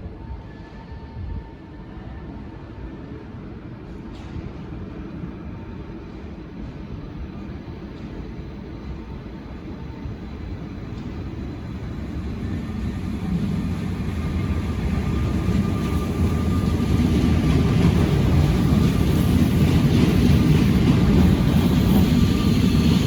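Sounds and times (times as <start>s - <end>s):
train rumble: 0.0s - 23.0s.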